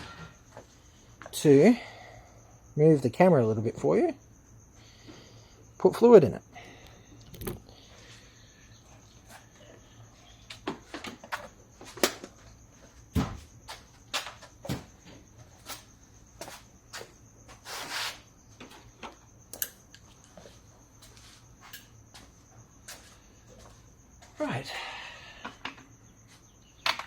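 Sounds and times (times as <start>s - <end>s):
scraping rustle: 17.5s - 18.2s.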